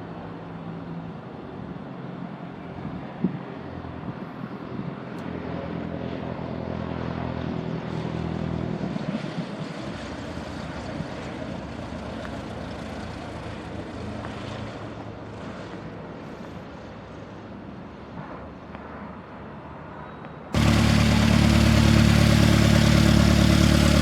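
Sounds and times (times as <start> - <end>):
propeller airplane droning: 0.2 - 16.3, 20.6 - 24.0
broad rushing noise: 20.6 - 24.0.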